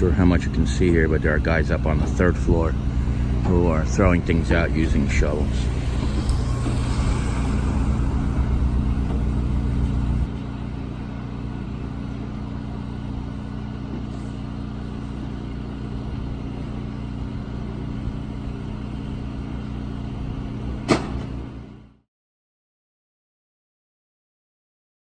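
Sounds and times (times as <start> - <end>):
engine idling: 0.0 - 21.9
sharp knock: 20.9 - 21.3.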